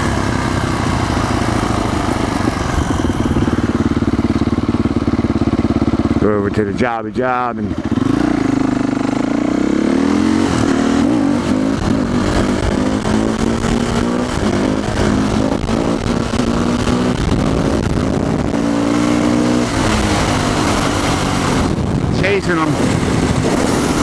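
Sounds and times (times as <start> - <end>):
wind rush on microphone: 0.0 - 4.3, 10.1 - 24.0
motorcycle engine revving: 0.0 - 24.0.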